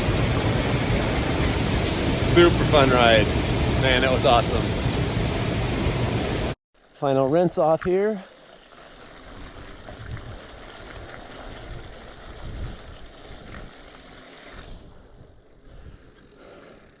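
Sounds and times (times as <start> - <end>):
rushing creek water: 0.0 - 6.6, 7.5 - 14.6
wind rumble on microphone: 9.4 - 13.8.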